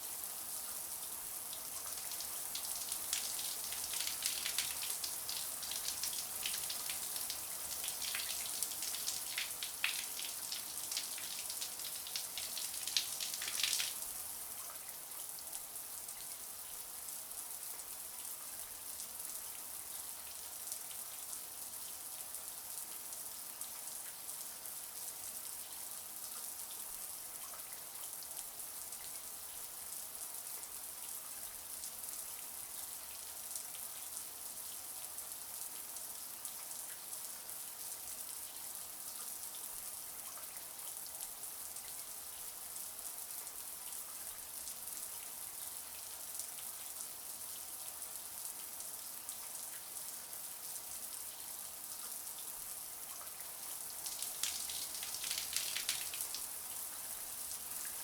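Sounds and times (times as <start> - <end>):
shower water running: 2.0 - 14.0, 53.6 - 58.0.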